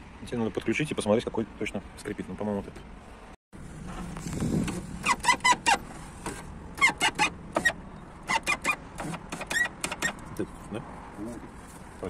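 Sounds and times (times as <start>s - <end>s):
power window squeaking: 3.8s - 10.2s.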